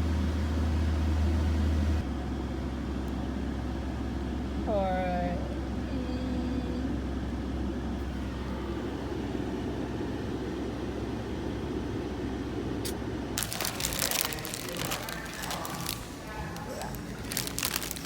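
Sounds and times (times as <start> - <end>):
car interior rumble: 13.4 - 18.0
packaging crinkling: 13.4 - 18.0.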